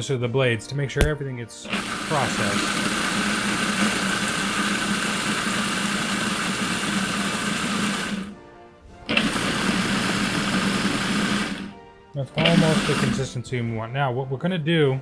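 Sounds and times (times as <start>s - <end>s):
food processor motor whirring: 1.7s - 8.4s, 9.1s - 11.8s, 12.4s - 13.3s.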